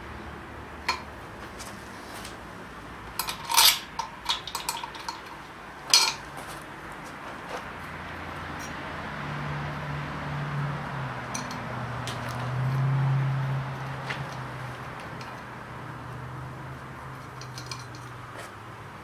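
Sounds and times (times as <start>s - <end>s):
metal tools clinking: 3.1s - 6.7s, 11.2s - 12.9s, 14.0s - 15.6s, 16.2s - 18.5s.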